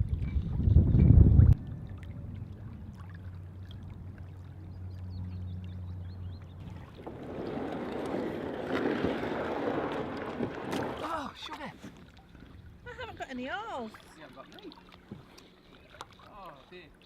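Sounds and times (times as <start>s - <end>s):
low steady hum: 0.0s - 17.0s
water sloshing around kayak: 0.0s - 17.0s.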